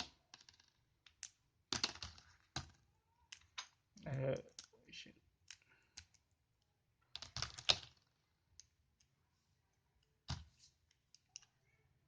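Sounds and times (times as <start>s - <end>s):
plastic toy parts clicking: 0.0s - 3.8s, 7.0s - 9.1s.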